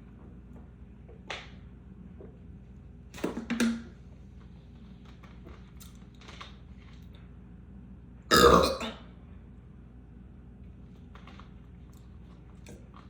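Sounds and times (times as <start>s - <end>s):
person burping: 8.3s - 9.0s.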